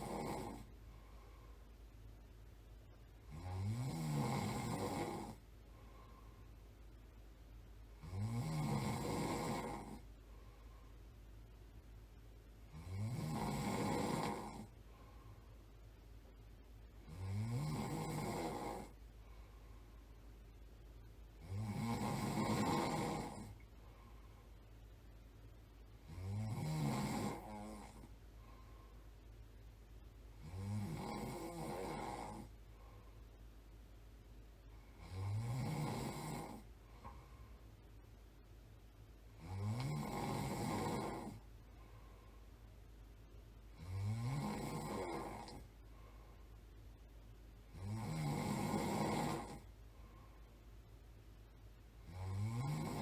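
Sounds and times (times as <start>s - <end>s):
person snoring: 0.0s - 0.7s, 3.2s - 5.4s, 8.0s - 10.1s, 12.7s - 15.2s, 17.0s - 19.0s, 21.4s - 23.6s, 26.0s - 28.7s, 30.4s - 33.0s, 34.9s - 37.1s, 39.4s - 41.4s, 43.7s - 45.7s, 47.7s - 49.7s, 52.0s - 53.0s.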